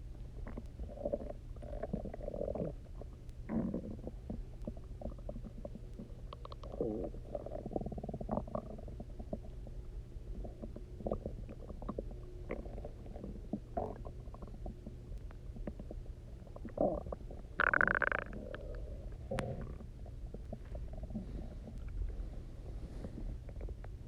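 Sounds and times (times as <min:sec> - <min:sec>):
stomach rumbling and gurgling: 0:00.0 - 0:24.0.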